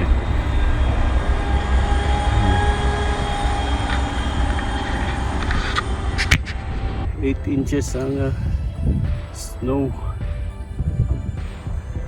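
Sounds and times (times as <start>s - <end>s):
heavy vehicle rumbling: 0.0s - 9.4s
faint whining tones: 0.0s - 12.0s.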